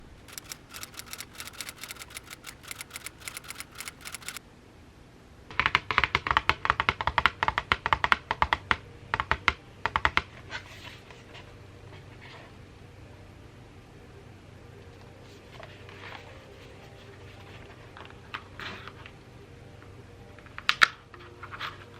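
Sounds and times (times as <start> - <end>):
rapid crisp clicks: 0.0 - 4.4.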